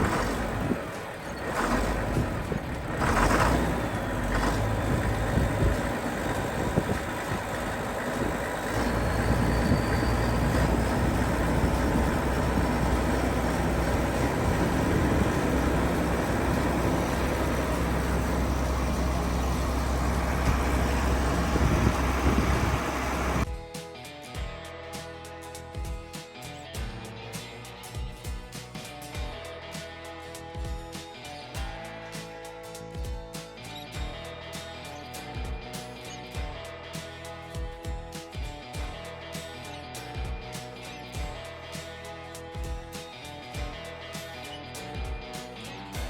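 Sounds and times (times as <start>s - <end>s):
diesel tractor engine running: 0.0s - 23.5s
faint rising whistle: 8.7s - 12.8s.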